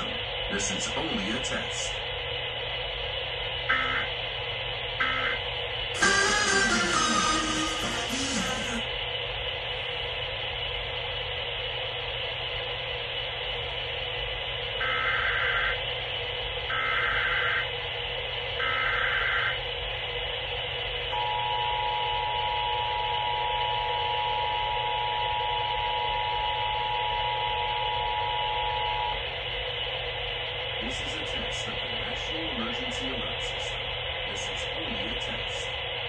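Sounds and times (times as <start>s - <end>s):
radio hiss: 0.0s - 20.9s, 28.8s - 36.0s
digital data bursts: 5.0s - 8.8s.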